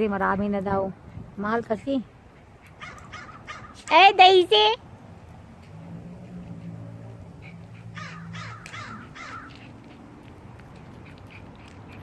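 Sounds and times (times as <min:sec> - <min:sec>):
crow cawing: 0:02.8 - 0:03.8, 0:08.0 - 0:09.6.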